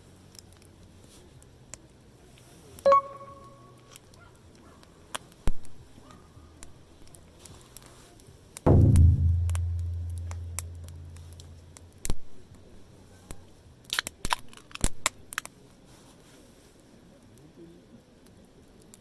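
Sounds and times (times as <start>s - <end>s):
low resonant thump: 8.7s - 11.8s.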